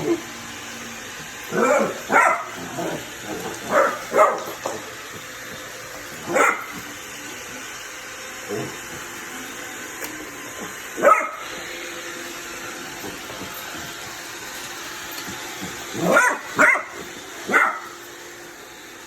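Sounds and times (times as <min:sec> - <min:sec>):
robot vacuum whirring: 0:00.0 - 0:19.0
puppy barking: 0:01.5 - 0:04.9, 0:06.2 - 0:06.8, 0:11.0 - 0:11.4, 0:16.0 - 0:18.0.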